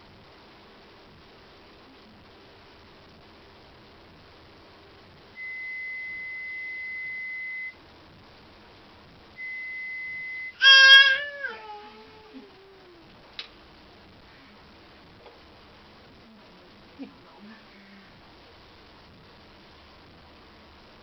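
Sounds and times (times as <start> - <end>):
pure test tones: 5.3 - 7.8, 9.3 - 12.2
high-pitched vocal cry: 10.6 - 13.0.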